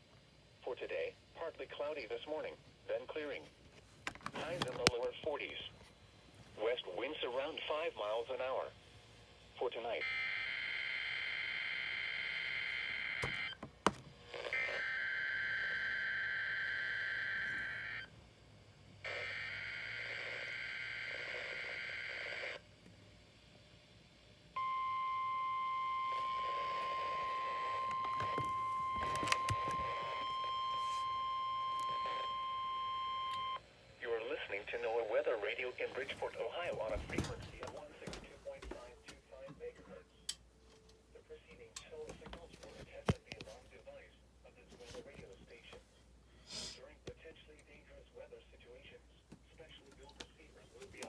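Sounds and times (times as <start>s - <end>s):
steady alarm tone: 10.0s - 13.7s, 24.6s - 33.6s.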